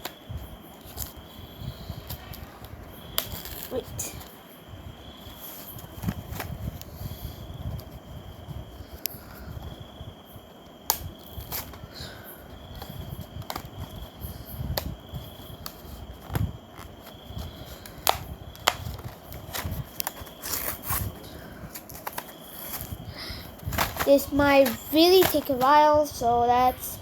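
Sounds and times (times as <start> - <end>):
handling rustles: 12.5 - 27.0
packaging clicks and taps: 14.7 - 21.1, 21.7 - 25.8.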